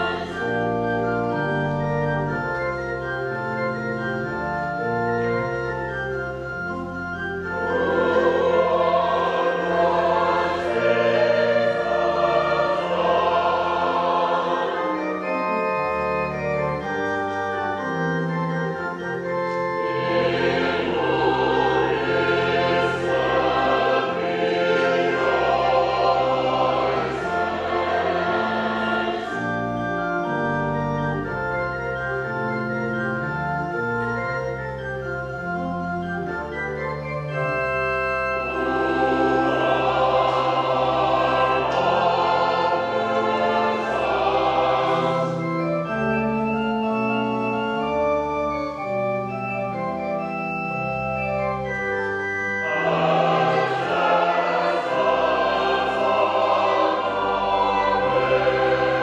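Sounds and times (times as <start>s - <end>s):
singers singing a hymn: 0.0s - 1.9s, 7.6s - 17.0s, 19.6s - 31.0s, 38.4s - 47.7s, 52.5s - 59.0s
organ playing held chords: 0.0s - 59.0s.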